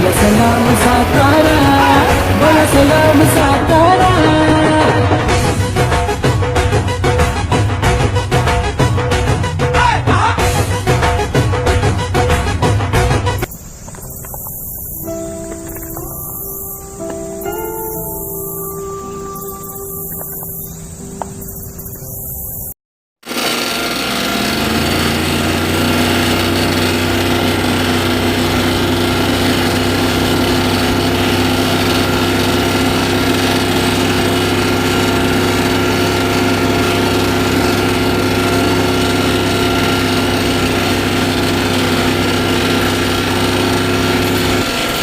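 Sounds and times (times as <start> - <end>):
small engine running: 0.0 - 4.6, 13.3 - 22.0, 22.6 - 45.0.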